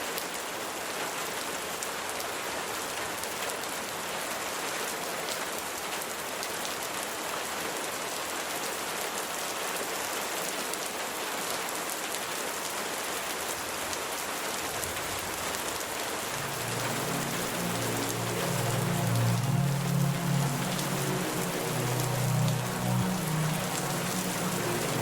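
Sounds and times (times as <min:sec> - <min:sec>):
steady rain falling: 0:00.0 - 0:25.0
low sustained music tones: 0:16.2 - 0:25.0.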